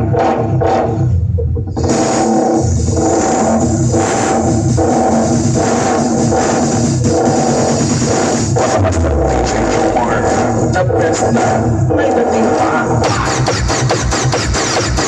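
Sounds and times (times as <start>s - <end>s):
loud music with heavy bass: 0.0s - 15.0s.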